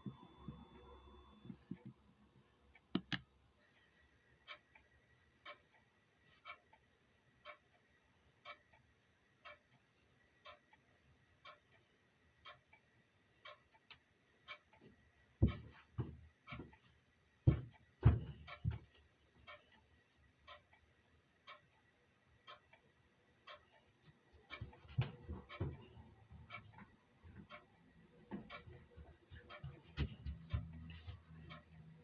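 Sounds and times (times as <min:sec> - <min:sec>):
clock ticking: 0:02.7 - 0:03.2, 0:04.4 - 0:06.8, 0:07.4 - 0:09.8, 0:10.4 - 0:10.8, 0:11.4 - 0:32.0
deep thumps: 0:15.4 - 0:16.7, 0:17.5 - 0:18.9, 0:28.4 - 0:31.3.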